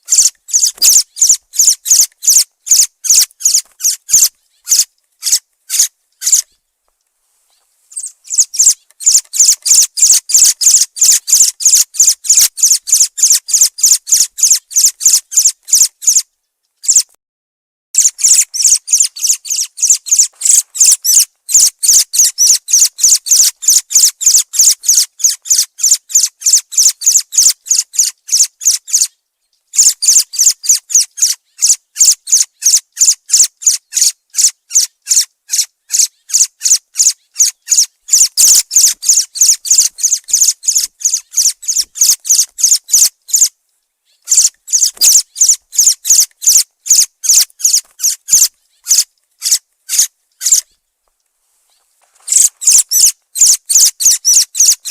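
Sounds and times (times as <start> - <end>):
thrush chirping: 0.0 - 6.6, 7.9 - 16.2, 18.0 - 28.5, 35.1 - 50.8, 52.2 - 54.9.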